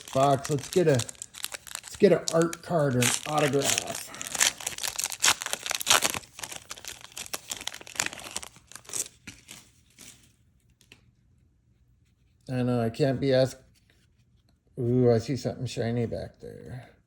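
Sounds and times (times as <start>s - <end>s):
foil pack tearing and crinkling: 0.0s - 10.2s.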